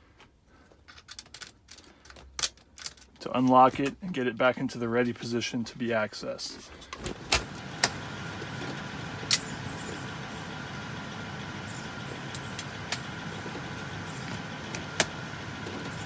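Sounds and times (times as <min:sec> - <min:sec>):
steady background hum: 0:00.2 - 0:16.0
sharp metallic clicks: 0:09.2 - 0:09.9.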